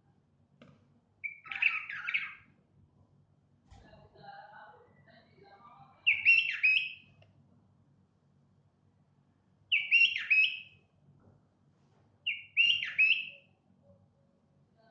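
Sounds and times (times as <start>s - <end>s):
bulbul whistled song: 1.2s - 2.4s, 6.1s - 7.1s, 9.7s - 10.8s, 12.3s - 13.5s.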